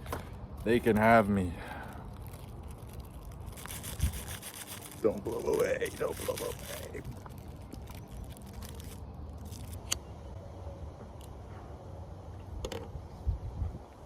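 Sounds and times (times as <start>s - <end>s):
wind rumbling on microphone: 2.1s - 9.7s, 12.9s - 14.0s.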